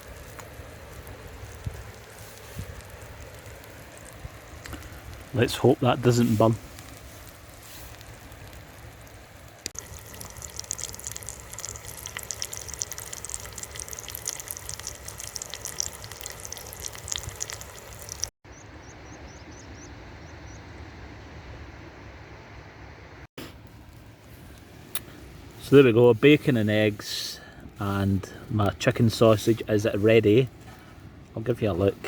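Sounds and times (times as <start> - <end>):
bacon and eggs sizzling: 0.0 - 18.3
outdoor hiss: 0.0 - 18.3.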